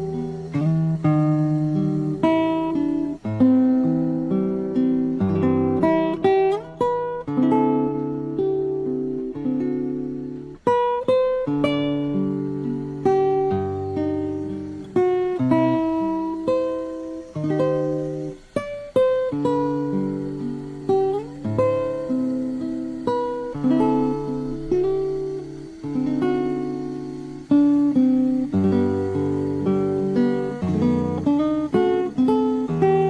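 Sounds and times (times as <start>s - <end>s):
acoustic guitar music: 0.0s - 33.0s.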